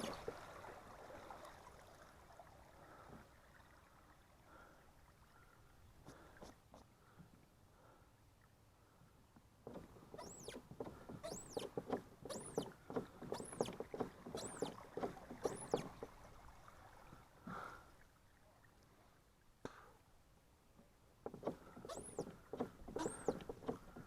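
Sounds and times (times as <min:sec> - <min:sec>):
water splashing: 0:00.0 - 0:06.7, 0:09.6 - 0:18.8
high rhythmic squeak: 0:10.1 - 0:10.6, 0:11.2 - 0:15.9, 0:21.8 - 0:24.0.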